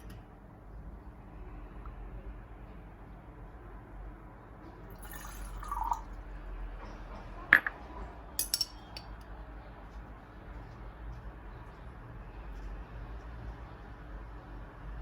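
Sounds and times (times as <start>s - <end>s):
glass clinking: 4.9s - 6.1s, 8.4s - 9.1s
liquid pouring into a glass: 4.9s - 6.2s.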